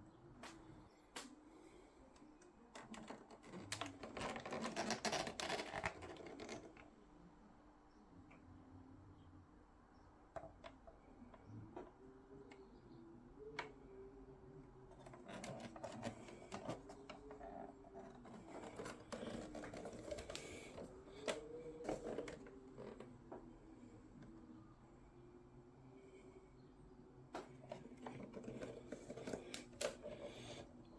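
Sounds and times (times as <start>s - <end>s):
faint wavering hum: 6.4s - 30.9s.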